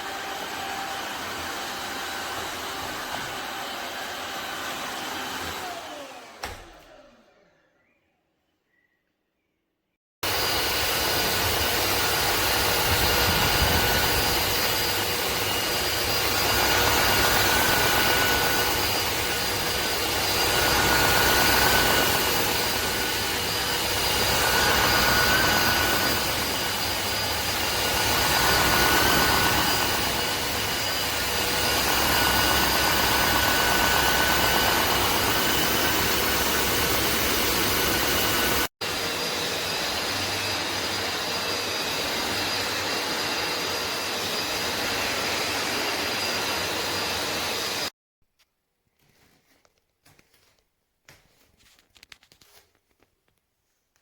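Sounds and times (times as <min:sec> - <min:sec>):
floor vacuum running: 0:00.0 - 0:08.0, 0:10.2 - 0:47.9.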